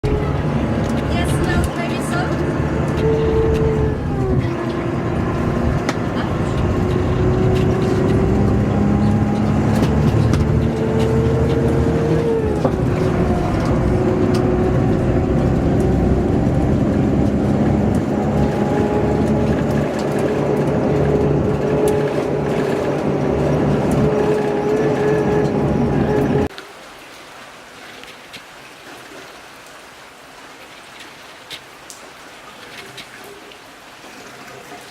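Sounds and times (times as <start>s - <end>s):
vehicle engine running: 0.0s - 26.5s
road noise: 0.0s - 26.6s.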